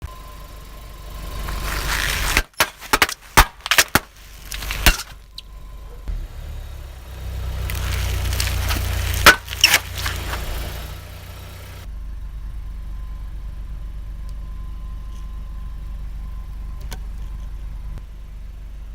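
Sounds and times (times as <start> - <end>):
low engine rumble: 0.0 - 18.9
tyre crushing crunchy objects: 1.2 - 5.4, 7.2 - 11.1.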